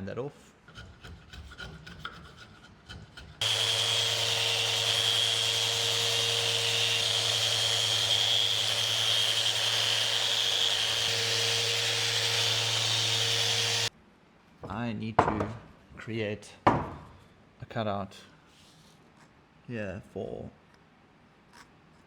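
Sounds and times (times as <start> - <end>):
power sander on wood: 3.4 - 13.9.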